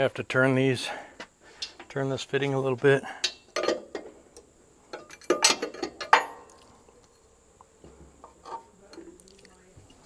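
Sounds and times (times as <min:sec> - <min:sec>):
metal fitting clinking and clanking: 0:03.2 - 0:04.2, 0:04.9 - 0:06.6.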